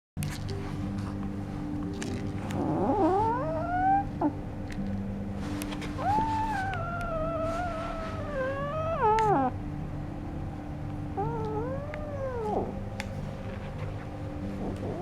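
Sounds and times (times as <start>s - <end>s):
cat meowing: 2.6s - 4.3s, 5.9s - 9.6s, 11.2s - 12.8s.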